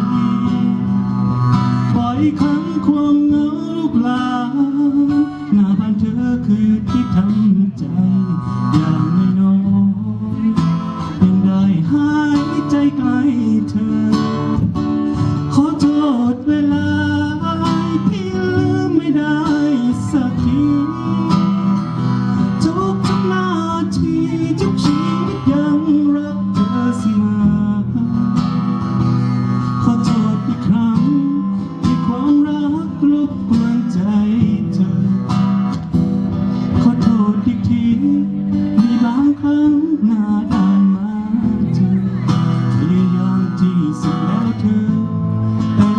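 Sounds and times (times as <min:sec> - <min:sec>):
guitar: 0:00.0 - 0:45.9
live band playing: 0:00.0 - 0:45.9
person singing: 0:15.4 - 0:28.8.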